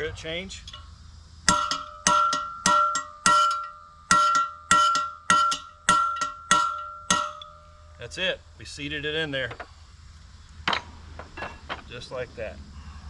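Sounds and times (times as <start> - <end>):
hammer striking metal punch: 1.5 - 7.6.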